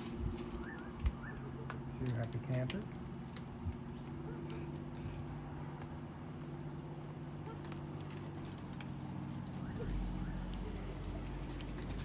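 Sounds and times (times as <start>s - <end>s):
light clicks and ticks: 0.6s - 6.6s.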